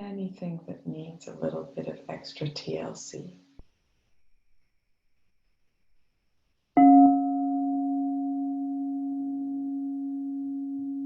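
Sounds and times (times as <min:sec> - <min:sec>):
crystal singing bowl ringing: 0:06.8 - 0:11.0.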